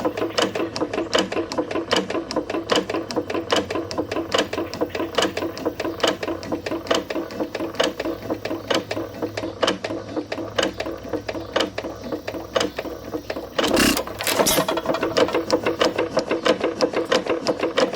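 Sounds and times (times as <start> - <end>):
hit-and-miss engine running: 0.0 - 17.9
gears clanking: 13.4 - 16.1.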